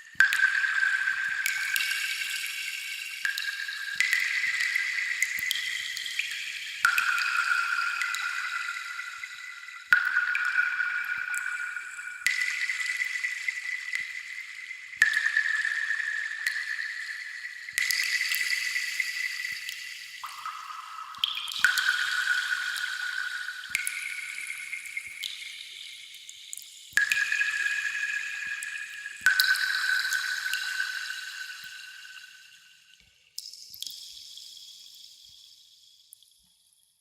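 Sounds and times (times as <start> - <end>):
ringing water-drop plinks: 15.0 - 34.6.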